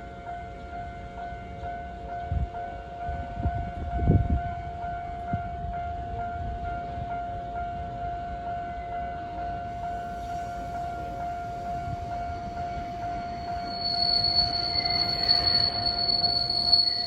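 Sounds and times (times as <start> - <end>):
level-crossing warning bell: 0.2 - 17.0
train arriving: 7.7 - 17.0
high wheel squeal: 9.9 - 17.0.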